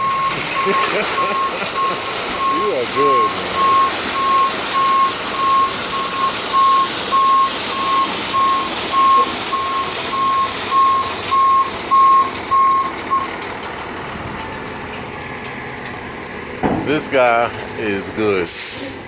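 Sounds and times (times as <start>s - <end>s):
reversing alarm beeping: 0.0s - 13.3s
truck engine running: 0.0s - 19.0s.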